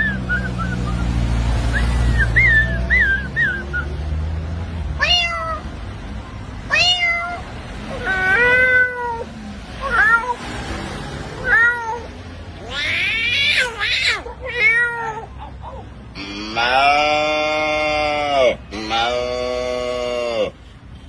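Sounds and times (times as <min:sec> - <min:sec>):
man imitating cat chirps: 0:16.1 - 0:20.6
man imitating cat meows: 0:16.2 - 0:20.6.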